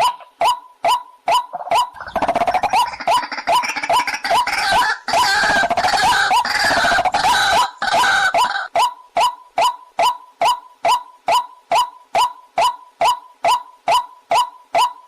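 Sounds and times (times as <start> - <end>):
waterhen calls: 0.0 - 14.5.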